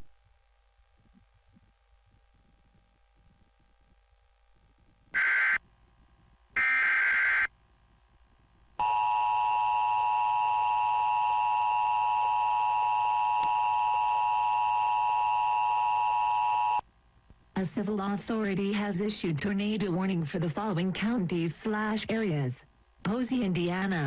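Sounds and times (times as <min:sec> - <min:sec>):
digital data bursts: 0:06.6 - 0:07.5.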